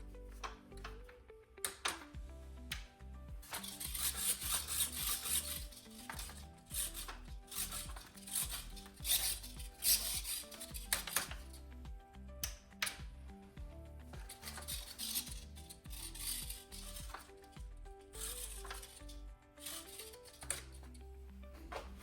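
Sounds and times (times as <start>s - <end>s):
background music with low notes: 0.0s - 22.0s
scratchy rubbing noise: 3.4s - 11.3s, 18.2s - 20.6s.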